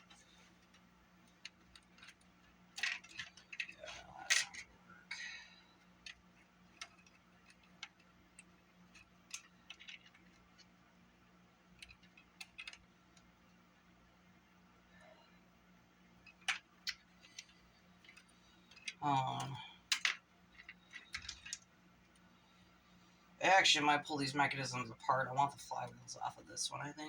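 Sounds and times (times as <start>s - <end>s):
small parts clicking and rattling: 0.0s - 4.7s, 5.7s - 10.8s, 11.6s - 13.6s, 16.1s - 22.3s.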